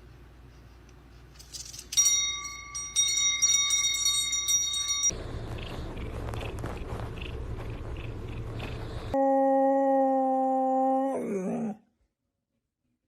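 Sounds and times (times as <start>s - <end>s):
bell ringing: 1.9s - 5.2s
low rumbling noise: 5.1s - 9.2s.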